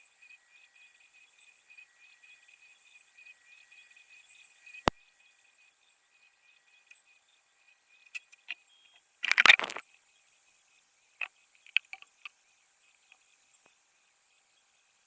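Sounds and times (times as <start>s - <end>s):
sharp clicks: 9.2s - 9.8s
small hard objects clattering: 9.2s - 9.8s.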